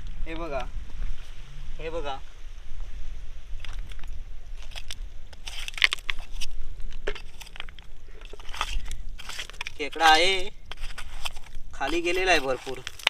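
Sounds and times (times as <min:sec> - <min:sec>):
crunching and scraping clicks: 0:03.6 - 0:13.0.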